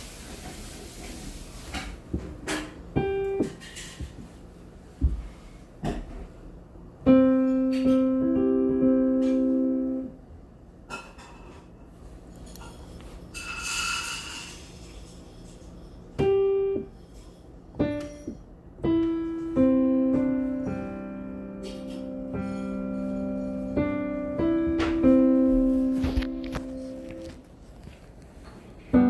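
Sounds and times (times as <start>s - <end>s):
piano chords and notes: 2.8s - 4.2s, 7.0s - 10.6s, 16.2s - 17.0s, 17.7s - 27.5s.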